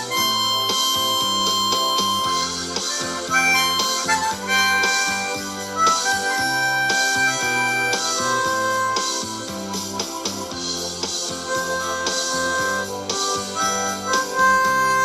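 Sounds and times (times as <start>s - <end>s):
harmonica solo with bent notes: 0.0s - 10.4s, 11.2s - 15.0s
band backing track: 0.0s - 15.0s.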